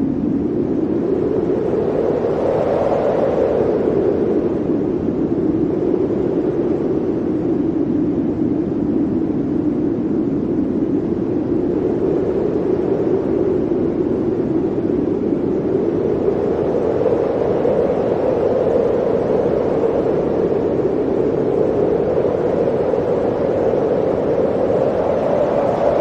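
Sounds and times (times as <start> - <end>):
blizzard wind rushing: 0.0 - 26.0.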